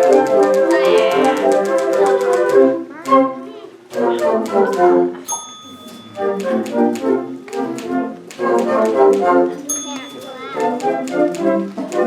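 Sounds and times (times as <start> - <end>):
typewriter key clicks: 0.0 - 2.6, 5.9 - 12.0
flute orchestra playing: 0.0 - 5.1, 6.1 - 9.6, 10.6 - 12.0
typewriter carriage bell ringing: 5.3 - 6.8, 9.7 - 10.9.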